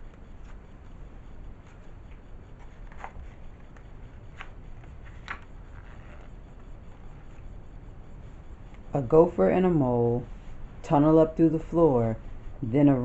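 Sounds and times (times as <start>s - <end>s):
book pages rustling: 0.4s - 0.6s, 1.6s - 7.4s.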